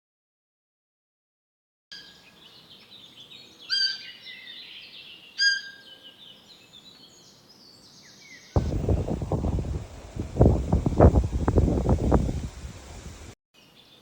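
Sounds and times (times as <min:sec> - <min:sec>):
birdsong: 0:01.9 - 0:12.0
shrill deer calls: 0:03.6 - 0:04.6, 0:05.3 - 0:06.2.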